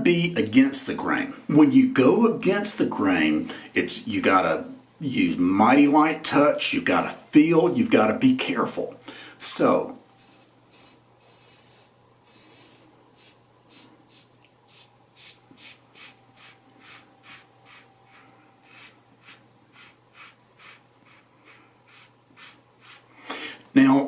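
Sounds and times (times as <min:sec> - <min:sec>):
razor scraping stubble: 0:10.2 - 0:23.0.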